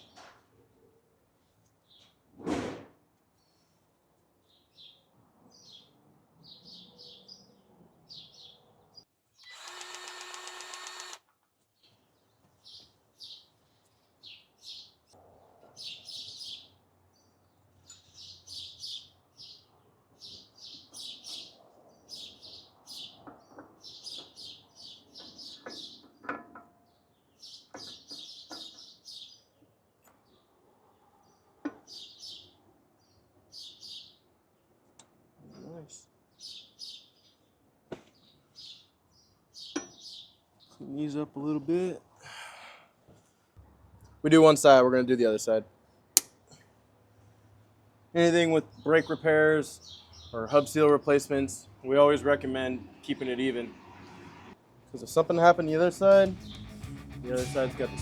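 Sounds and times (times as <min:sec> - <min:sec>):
small birds chirping: 0:11.6 - 0:26.3, 0:26.9 - 0:30.5, 0:31.2 - 0:34.3, 0:35.4 - 0:41.6, 0:48.4 - 0:51.5.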